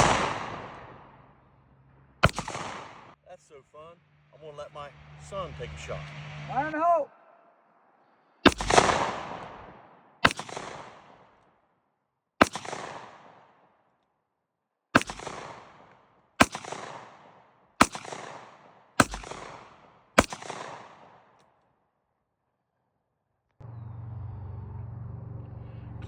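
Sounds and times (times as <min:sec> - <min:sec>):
revolver shots with echo: 0:02.2 - 0:03.1, 0:08.5 - 0:09.6, 0:10.3 - 0:11.2, 0:17.8 - 0:20.9.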